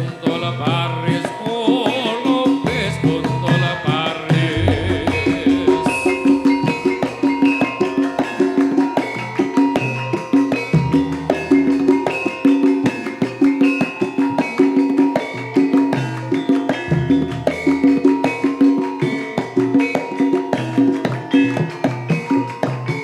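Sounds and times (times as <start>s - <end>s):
drum strokes: 2.6s - 13.8s.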